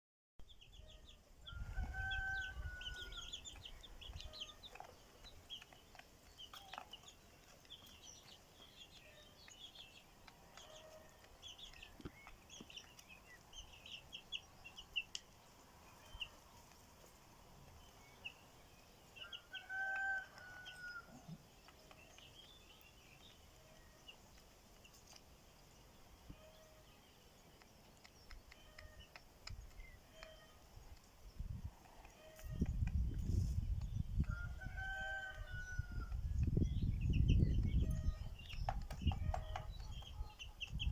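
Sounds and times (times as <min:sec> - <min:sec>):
small birds chirping: 0:00.5 - 0:40.9.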